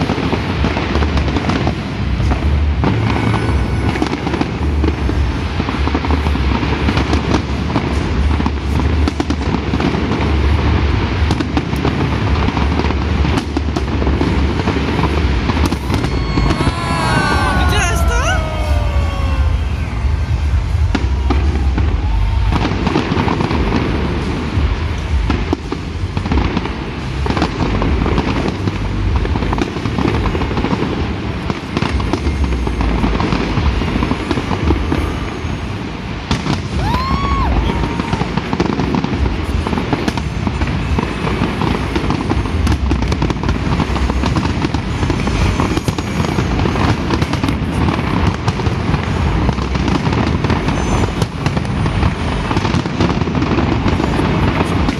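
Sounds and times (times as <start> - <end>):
deep fireworks booms: 0.0 - 54.9
fireworks bangs and crackling: 0.0 - 54.9.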